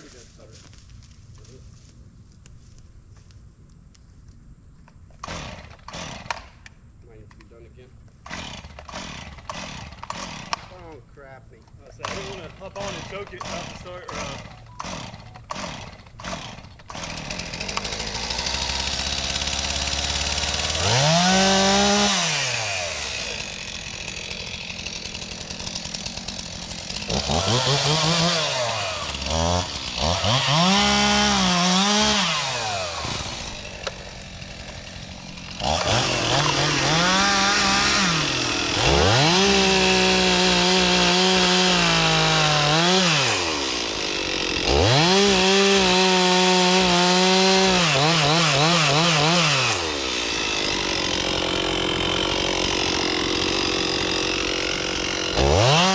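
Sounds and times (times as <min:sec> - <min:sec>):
chainsaw revving: 0:05.2 - 0:06.5, 0:08.2 - 0:11.0, 0:11.9 - 0:55.9.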